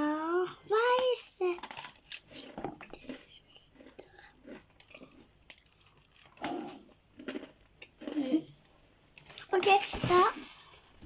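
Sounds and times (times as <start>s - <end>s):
cookie crunching and chewing: 1.0s - 8.6s.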